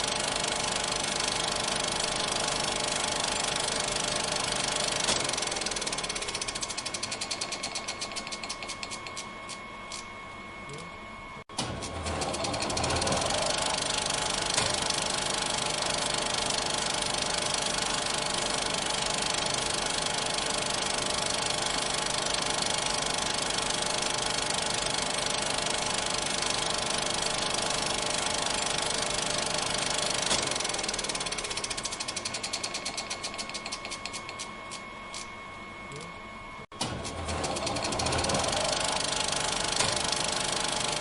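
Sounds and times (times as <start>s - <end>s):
film projector clatter and hum: 0.0s - 41.0s.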